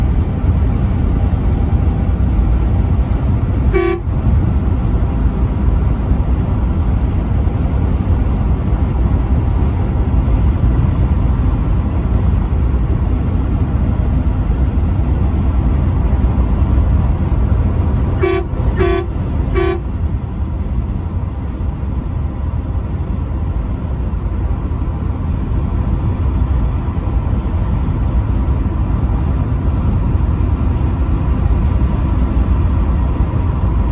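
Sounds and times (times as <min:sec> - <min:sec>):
truck driving on highway: 0:00.0 - 0:33.9
truck horn toots: 0:03.7 - 0:04.4, 0:18.1 - 0:20.0.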